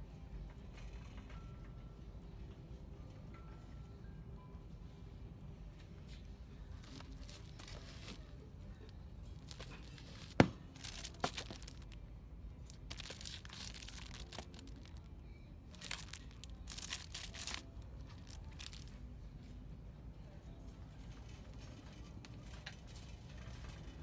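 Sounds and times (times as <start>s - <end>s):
packaging rustling and crinkling: 6.8s - 8.2s, 9.4s - 12.0s, 12.7s - 15.1s, 15.7s - 18.9s.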